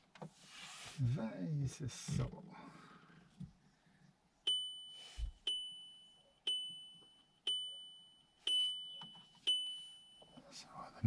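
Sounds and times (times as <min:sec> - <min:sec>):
electronic warning chime dinging: 0:04.5 - 0:10.4.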